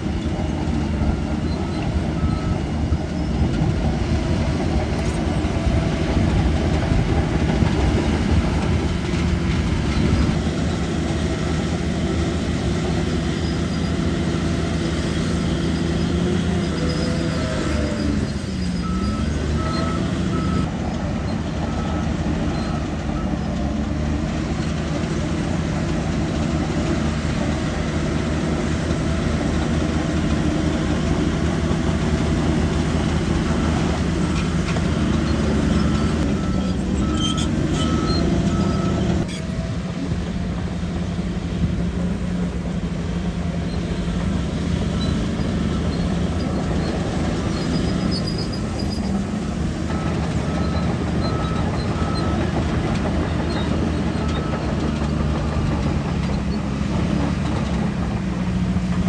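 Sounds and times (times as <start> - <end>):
bulldozer diesel engine: 0.0 - 59.0
reversing alarm beeping: 16.6 - 20.7, 47.3 - 55.7.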